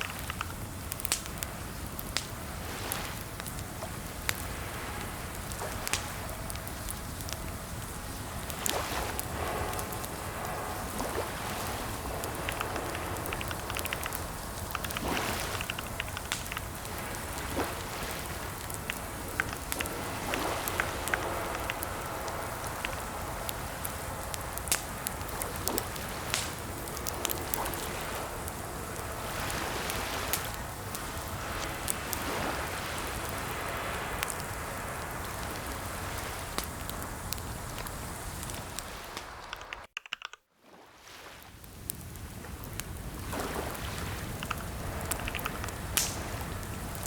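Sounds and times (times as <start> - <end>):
steady background hiss: 0.0 - 39.9, 41.0 - 47.0
keyboard key clicks: 39.5 - 40.4.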